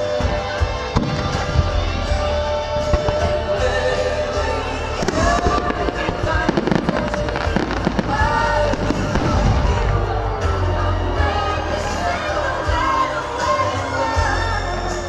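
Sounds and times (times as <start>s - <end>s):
loud music: 0.0s - 15.0s
fireworks bursting and crackling: 0.4s - 10.6s.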